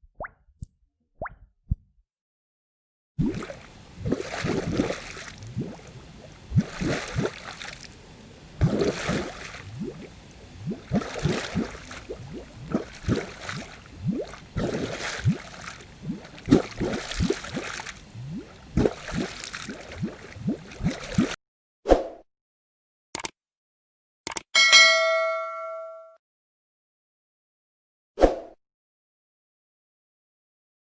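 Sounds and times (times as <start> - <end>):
water bubbling and gurgling: 3.2 - 21.4.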